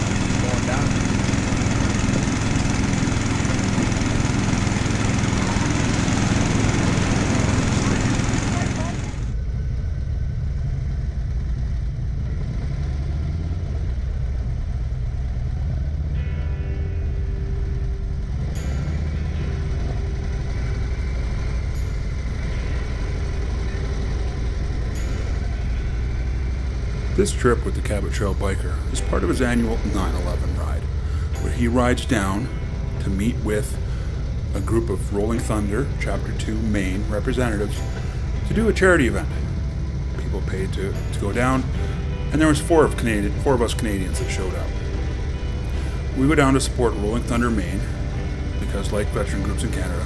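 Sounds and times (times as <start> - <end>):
motorcycle engine running: 0.0 - 9.9, 20.2 - 50.0
wind and road noise: 18.0 - 50.0.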